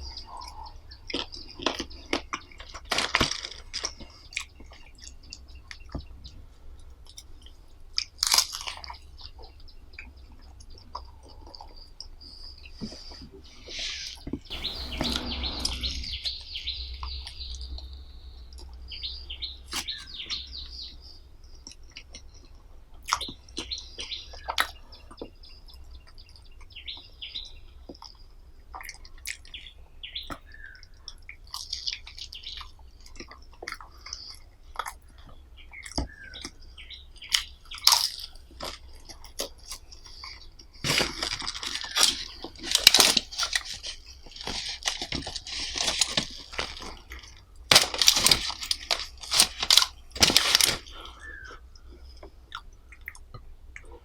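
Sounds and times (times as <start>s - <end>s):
chewing with wet mouth smacks: 21.6s - 26.8s, 27.9s - 29.7s, 30.3s - 36.6s, 50.9s - 54.0s.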